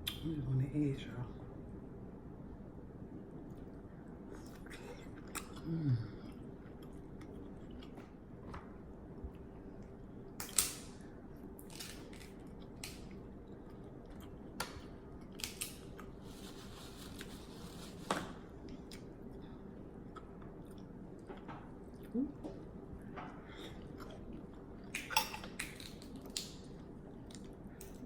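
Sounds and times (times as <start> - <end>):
person chewing and smacking: 3.4 - 10.8, 11.6 - 16.2, 18.6 - 23.1, 23.7 - 28.0
crab shell cracking: 11.6 - 13.2.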